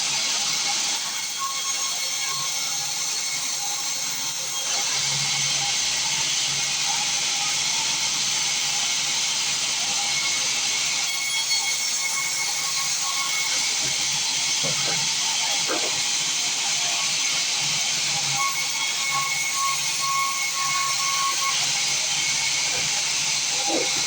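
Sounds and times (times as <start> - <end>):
band saw cutting wood: 9.9 - 24.0.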